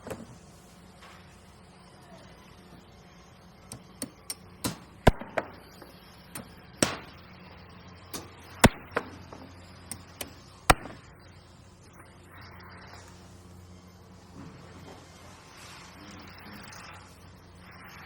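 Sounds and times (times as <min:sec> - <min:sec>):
low steady hum: 0:00.0 - 0:18.0
sharp construction impacts: 0:04.0 - 0:07.2, 0:08.1 - 0:11.2.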